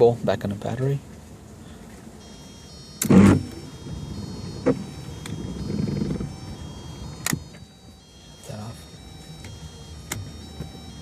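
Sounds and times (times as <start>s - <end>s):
wiper motor whirring: 2.2s - 11.0s.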